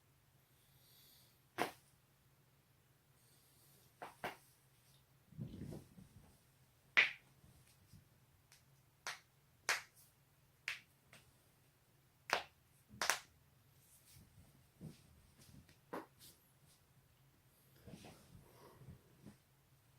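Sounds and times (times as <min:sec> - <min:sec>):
low muffled rustle: 0:05.3 - 0:06.4.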